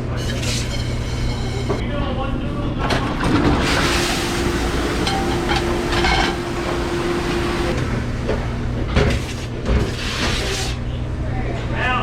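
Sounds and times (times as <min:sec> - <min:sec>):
machine drone with constant tone: 0:00.0 - 0:11.7
noisy wash: 0:03.3 - 0:07.9
dishes clattering: 0:04.9 - 0:06.5.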